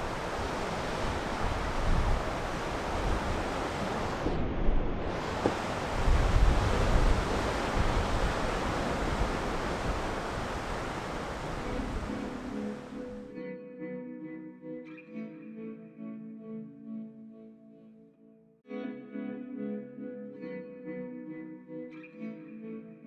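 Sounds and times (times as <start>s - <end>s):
surf breaking and washing: 0.0s - 13.2s
wind rumbling on microphone: 0.0s - 13.2s.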